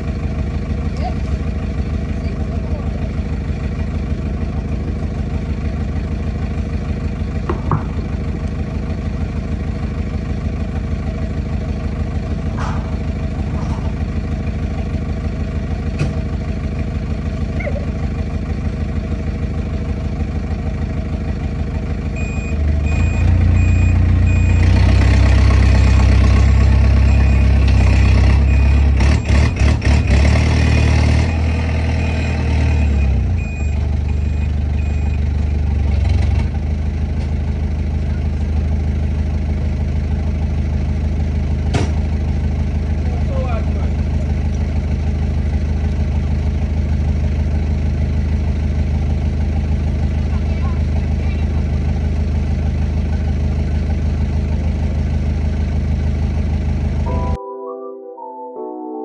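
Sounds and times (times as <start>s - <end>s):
heavy vehicle engine idling and revving: 0.0s - 57.4s
reversing alarm beeping: 22.2s - 24.8s, 26.4s - 35.4s.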